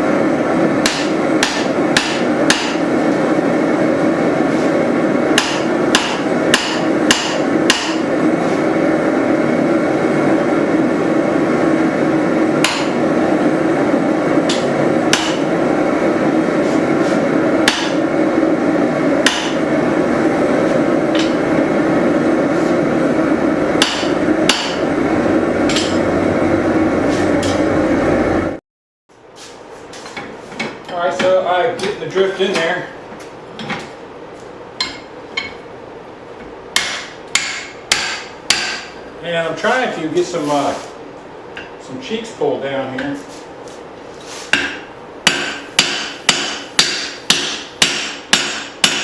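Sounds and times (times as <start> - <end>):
loud steady rushing noise: 0.0 - 28.6
hammer striking hot steel: 0.8 - 3.0, 5.3 - 8.2, 12.6 - 13.0, 14.4 - 15.6, 17.2 - 18.2, 19.1 - 19.8, 20.6 - 21.5, 23.7 - 24.9, 25.6 - 26.1, 34.8 - 35.6, 36.8 - 39.0, 44.5 - 49.0.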